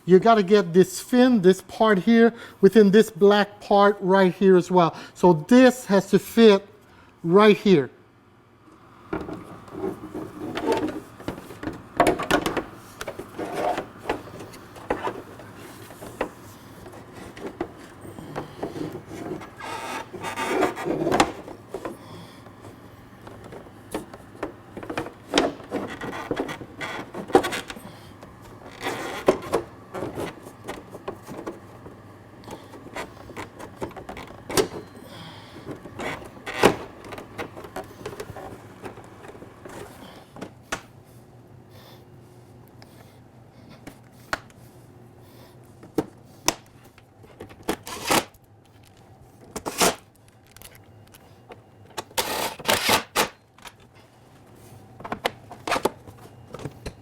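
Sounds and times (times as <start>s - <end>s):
plastic panels knocking and clicking: 9.1s - 15.3s
plastic rubbing and scraping: 9.2s - 27.8s, 28.4s - 34.9s, 35.6s - 40.0s, 52.1s - 53.0s.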